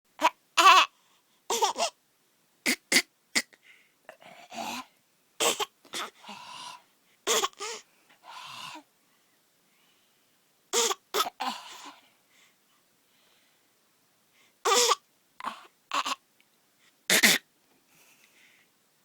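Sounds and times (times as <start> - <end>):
baby making high-pitched sounds: 0.2 - 0.9
baby breathy huffs: 5.5 - 8.8.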